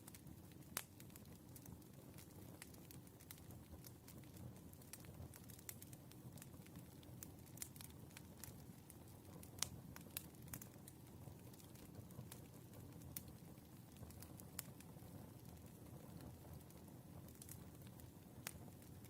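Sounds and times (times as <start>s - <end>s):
firewood crackling: 0.0s - 19.0s
low rumble of fire: 0.0s - 19.0s
sharp pops of fire: 0.1s - 19.0s.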